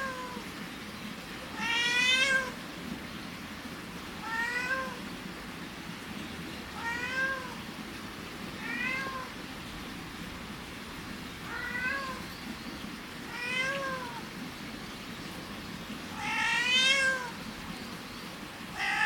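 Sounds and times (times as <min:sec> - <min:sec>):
cat meowing: 0:01.6 - 0:02.5, 0:04.2 - 0:05.0, 0:06.8 - 0:07.6, 0:08.6 - 0:09.3, 0:11.5 - 0:12.2, 0:13.3 - 0:14.2, 0:16.2 - 0:17.4, 0:18.8 - 0:19.0.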